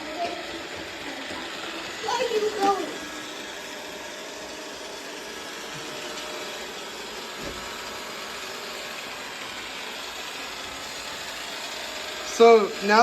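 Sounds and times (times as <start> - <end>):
robot vacuum running: 0.0 - 13.0.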